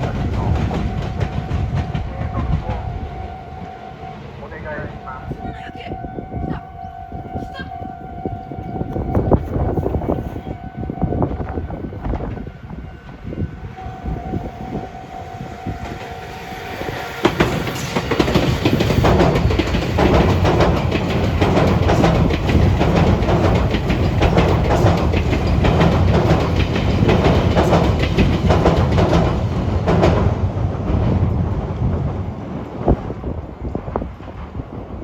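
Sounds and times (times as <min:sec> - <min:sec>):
train wheels clattering over rail joints: 0:00.0 - 0:03.1, 0:15.6 - 0:35.0
train low rumble: 0:00.0 - 0:35.0.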